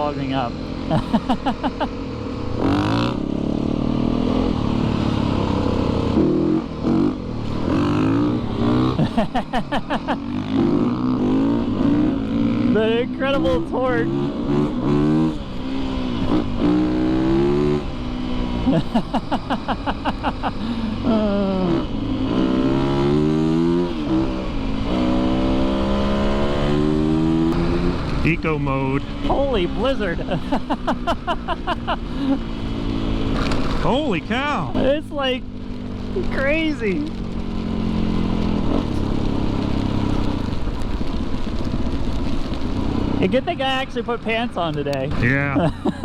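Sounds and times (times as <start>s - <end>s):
dirt bike engine running: 0.0s - 18.0s
motorcycle engine under throttle: 0.0s - 45.6s.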